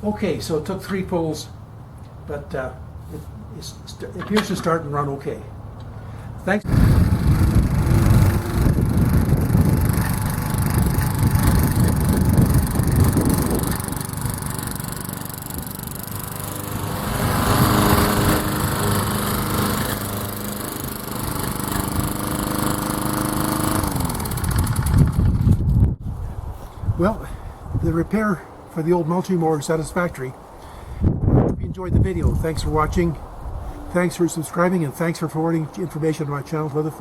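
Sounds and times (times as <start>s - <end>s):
lawn mower engine running: 6.6s - 25.7s.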